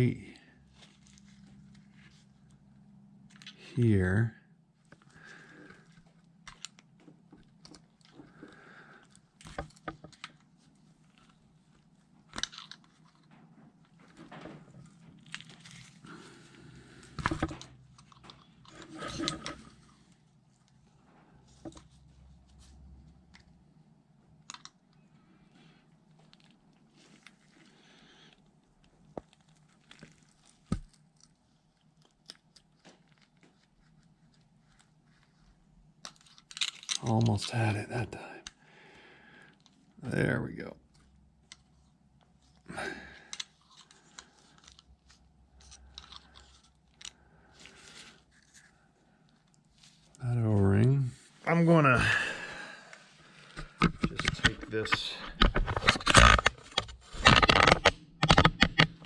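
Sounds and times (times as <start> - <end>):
metal hook tool scraping: 18.7 - 19.8.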